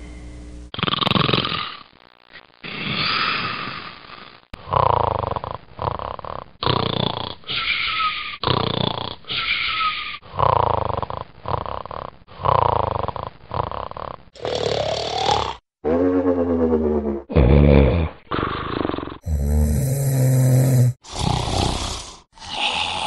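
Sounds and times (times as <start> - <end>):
harsh snoring: 0.7 - 1.9, 2.6 - 15.6, 17.2 - 23.0
snore rising in pitch: 10.2 - 23.0.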